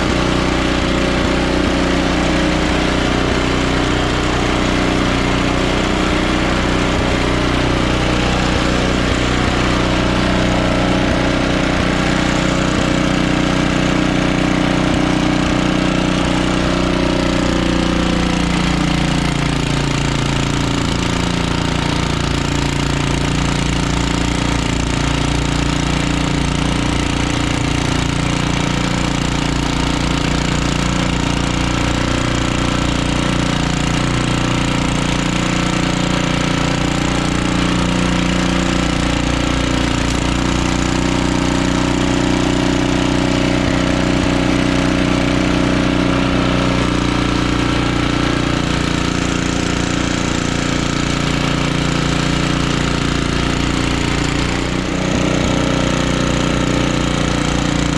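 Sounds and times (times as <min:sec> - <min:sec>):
snowblower engine running: 0:00.0 - 0:57.9.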